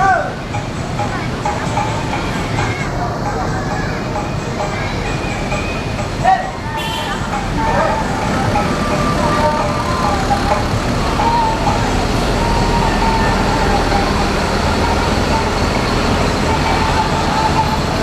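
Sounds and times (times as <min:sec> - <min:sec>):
diesel bus engines rumbling: 0:00.0 - 0:18.0
traffic noise: 0:00.0 - 0:18.0.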